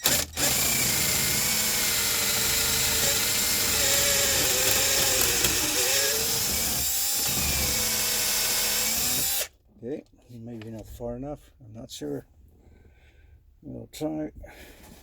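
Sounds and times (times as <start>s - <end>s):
power drill boring into metal: 0.0s - 9.5s.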